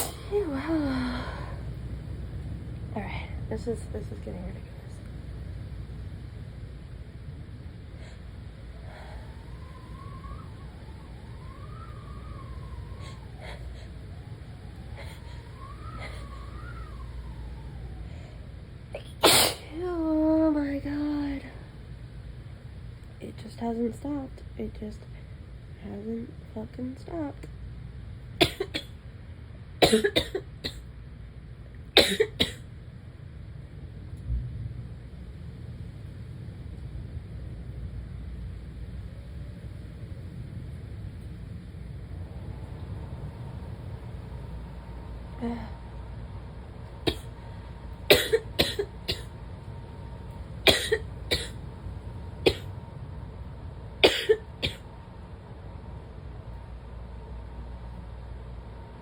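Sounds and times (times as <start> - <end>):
person coughing: 28.4 - 28.9, 29.8 - 30.8, 32.0 - 32.6, 48.1 - 49.3, 50.7 - 51.6, 54.0 - 54.8.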